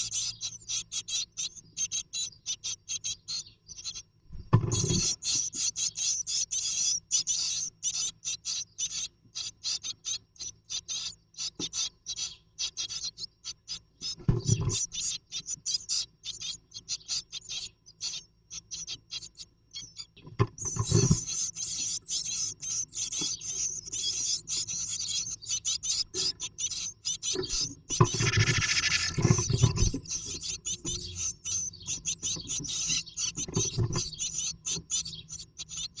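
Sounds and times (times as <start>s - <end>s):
dull bumps against nest box: 4.3s - 5.2s, 27.3s - 30.3s
claws scratching nesting material: 20.6s - 34.5s.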